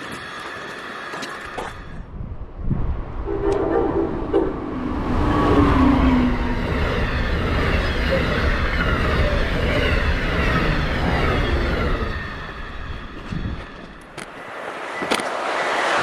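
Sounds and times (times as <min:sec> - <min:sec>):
train cars rushing past: 0:03.0 - 0:16.0.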